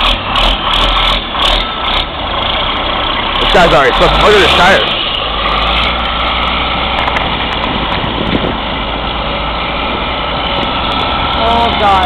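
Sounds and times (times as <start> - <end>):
diesel engine running under load: 0.0 - 12.0
tires spinning in snow: 0.0 - 12.0.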